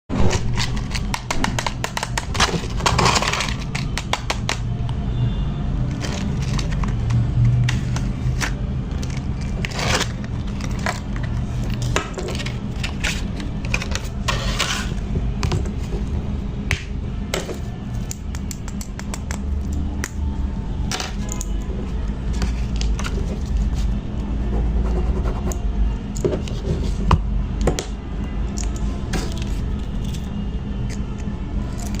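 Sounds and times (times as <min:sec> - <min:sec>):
packaging clicks and rustles: 0:00.3 - 0:04.7, 0:05.8 - 0:14.3.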